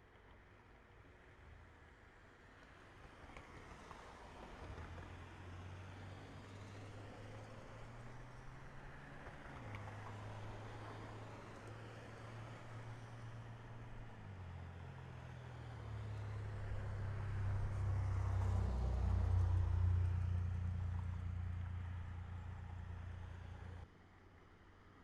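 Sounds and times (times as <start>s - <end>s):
passing vehicle engine hum: 3.5s - 23.9s.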